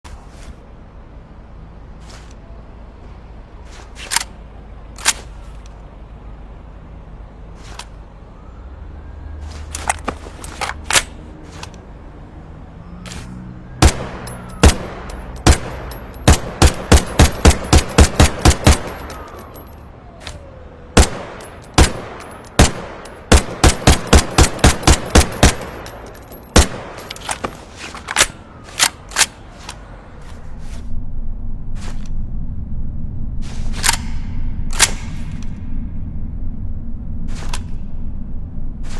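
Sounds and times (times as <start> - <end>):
rifle shots: 13.8 - 19.6, 21.0 - 27.4.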